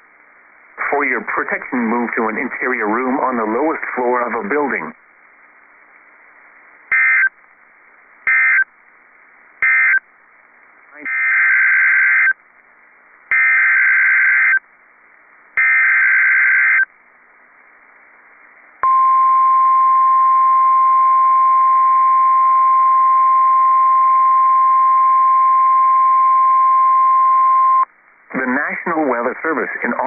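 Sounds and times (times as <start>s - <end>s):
buzzy digital data bursts: 6.9s - 7.3s, 8.3s - 8.7s, 9.6s - 10.0s, 11.0s - 12.4s, 13.3s - 14.6s, 15.6s - 16.9s
steady warning alarm tone: 6.9s - 7.3s, 8.3s - 8.6s, 9.6s - 10.0s, 13.3s - 14.6s, 15.6s - 16.9s.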